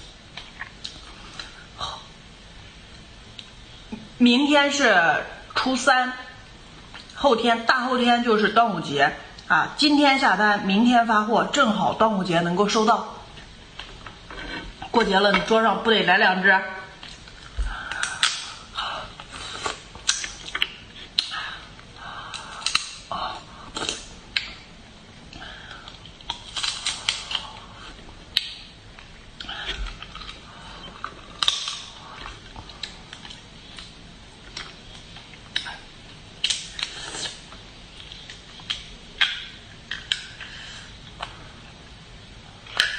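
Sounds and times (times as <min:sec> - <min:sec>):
wet chewing and smacking: 0:28.3 - 0:40.4.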